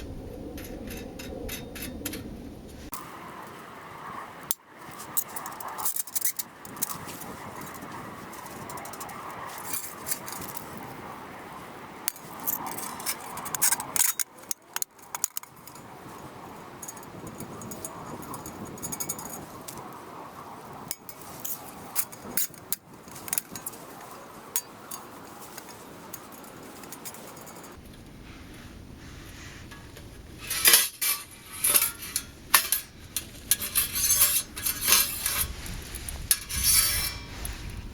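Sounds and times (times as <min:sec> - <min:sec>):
metal parts clinking and rattling: 0:05.1 - 0:10.8, 0:12.1 - 0:15.9, 0:16.8 - 0:19.8, 0:24.6 - 0:27.8, 0:30.4 - 0:35.5, 0:36.2 - 0:37.3.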